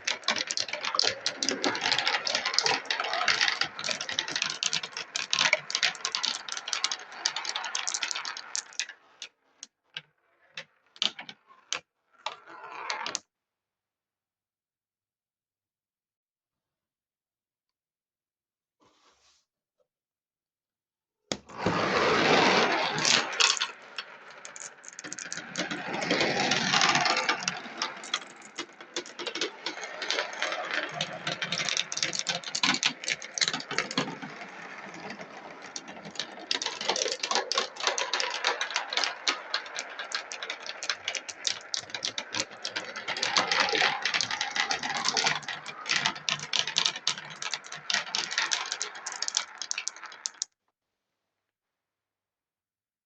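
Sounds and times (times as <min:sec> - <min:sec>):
marbles rattling down a track: 0:00.0 - 0:13.2, 0:21.6 - 0:50.5.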